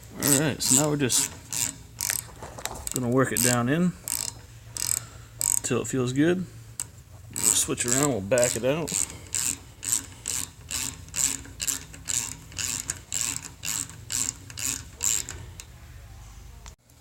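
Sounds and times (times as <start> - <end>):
ratchet clicking: 0.2 - 5.7, 6.8 - 15.7.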